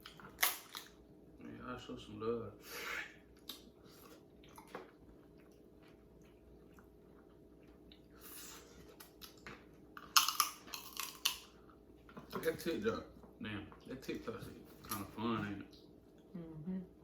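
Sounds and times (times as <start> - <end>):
chewing and wet mouth sounds: 0.0 - 1.0, 2.9 - 16.3.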